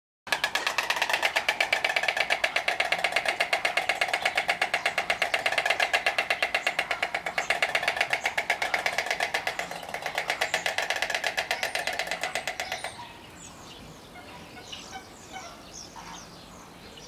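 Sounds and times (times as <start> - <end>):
stork bill clattering: 0.3 - 13.0.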